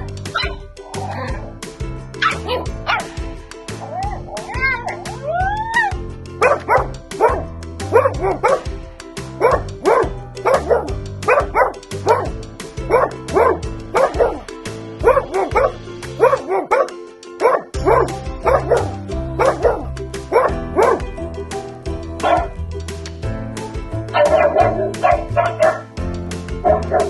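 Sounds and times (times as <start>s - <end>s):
background music with bass beat: 0.0s - 27.0s
dog barking: 0.3s - 0.6s, 2.2s - 3.1s, 6.4s - 8.7s, 9.4s - 14.4s, 15.0s - 21.0s, 22.2s - 22.5s, 24.2s - 25.9s, 26.6s - 27.0s.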